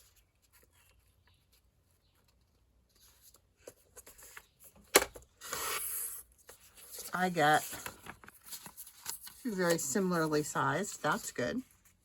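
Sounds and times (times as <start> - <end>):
paper rustling: 5.4 - 12.0.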